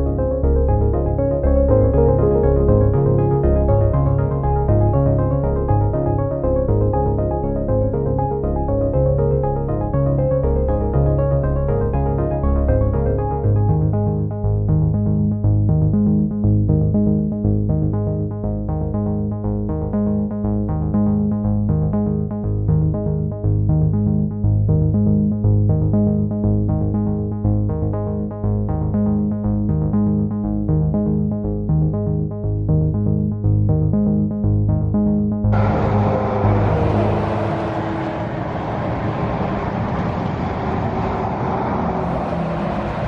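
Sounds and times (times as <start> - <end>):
synthesizer music with pulsing rhythm: 0.0 - 38.1.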